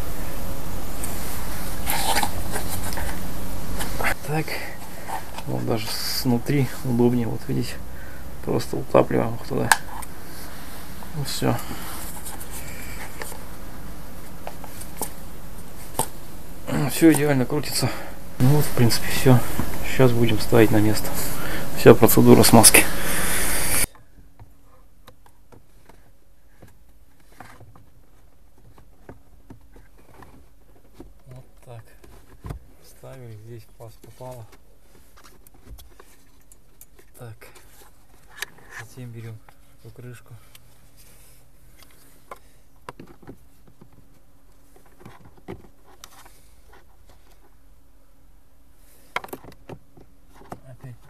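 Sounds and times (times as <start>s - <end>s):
low steady hum: 0.0s - 51.0s
plastic parts clicking and knocking: 41.8s - 47.5s, 49.1s - 51.0s.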